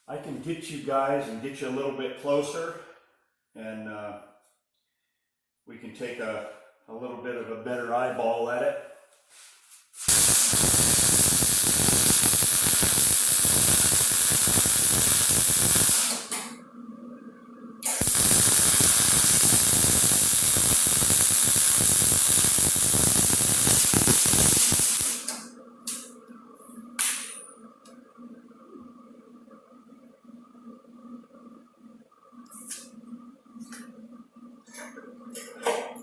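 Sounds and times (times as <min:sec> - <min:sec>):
welding arc crackling and hissing: 0:10.0 - 0:16.6, 0:17.8 - 0:26.1.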